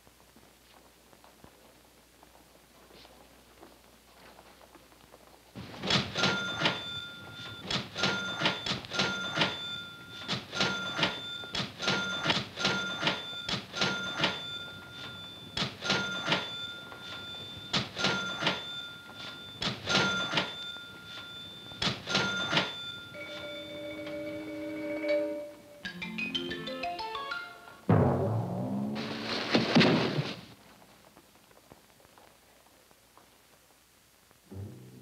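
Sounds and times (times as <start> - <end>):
machine clattering clacks: 5.6 - 23.1
steady ringing tone: 6.1 - 26.6
mallet percussion music: 25.0 - 27.8.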